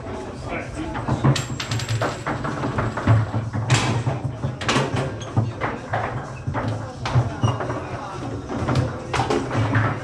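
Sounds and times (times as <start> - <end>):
foosball rods sliding and rattling: 0.9 - 10.0
foosball ball clacking: 1.1 - 7.2.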